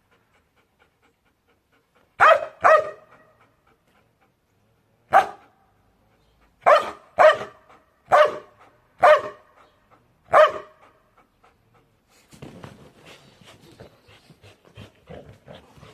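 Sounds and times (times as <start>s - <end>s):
dog barking: 2.2s - 3.3s, 5.1s - 5.5s, 6.6s - 9.5s, 10.3s - 10.8s.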